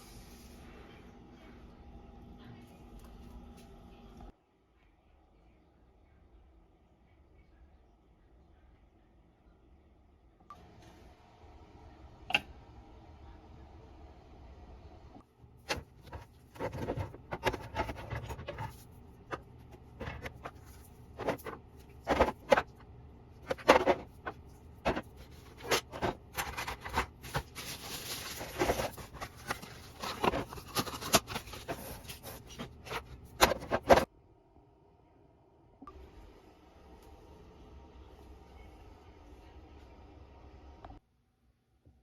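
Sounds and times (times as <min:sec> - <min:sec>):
objects knocking and scraping: 0:15.6 - 0:22.8, 0:23.4 - 0:34.1
rustling: 0:23.4 - 0:34.1.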